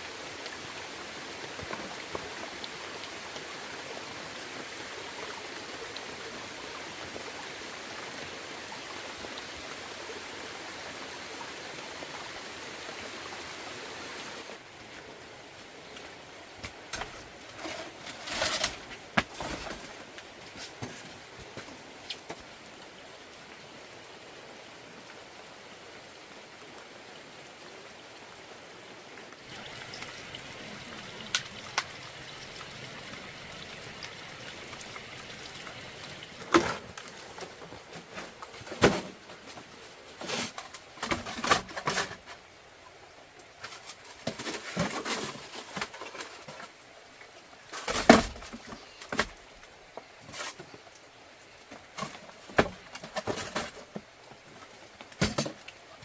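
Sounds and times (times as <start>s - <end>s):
water pouring: 29.4s - 38.7s.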